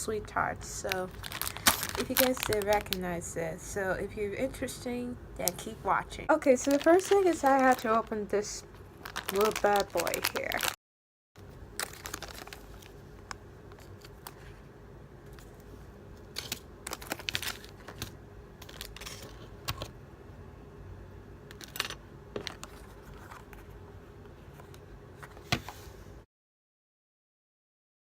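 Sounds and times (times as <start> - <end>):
faint steady hum: 0.0 - 10.8, 11.4 - 26.2
packaging crinkling and tearing: 0.8 - 3.0, 6.4 - 8.2, 9.0 - 10.8, 11.7 - 14.4, 16.2 - 19.5
sharp crackles and clicks: 0.8 - 3.0.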